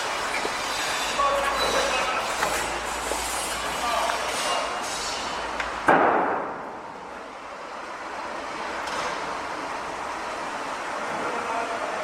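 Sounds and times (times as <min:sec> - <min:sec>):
construction site noise: 0:00.0 - 0:12.0
loud bang: 0:05.9 - 0:06.6.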